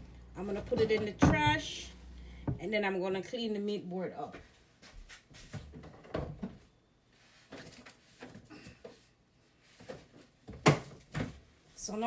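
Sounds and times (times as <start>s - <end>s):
kitchen items clattering: 0.4s - 1.8s.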